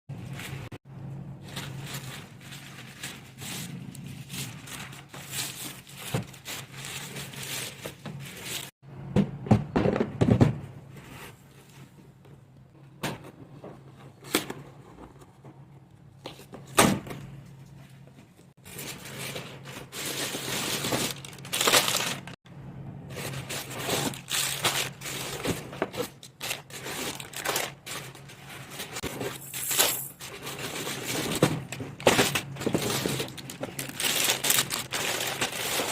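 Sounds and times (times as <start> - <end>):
plastic and cardboard rustling: 1.4 - 8.7, 16.2 - 22.4, 23.1 - 35.9
packaging tearing: 18.7 - 22.4, 23.2 - 28.2, 32.2 - 35.9.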